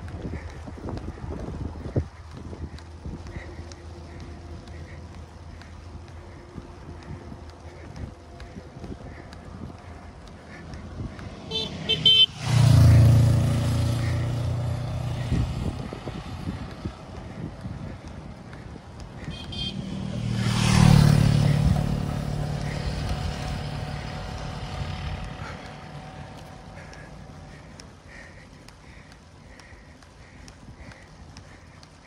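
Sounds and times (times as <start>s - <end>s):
vehicle engines passing: 0.0s - 32.0s
vehicle horn toot: 11.5s - 12.4s, 19.3s - 19.9s.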